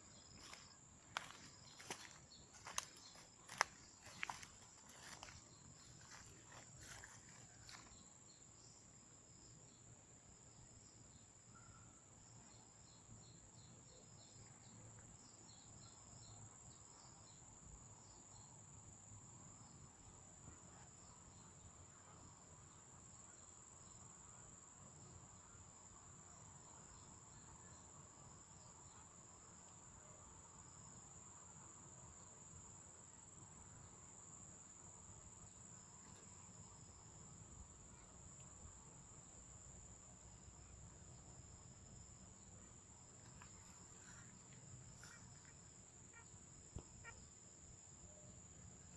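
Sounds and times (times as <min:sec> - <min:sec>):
insect high-pitched trill: 0:00.0 - 0:08.9, 0:32.1 - 0:48.9
insect chirps: 0:00.0 - 0:48.9.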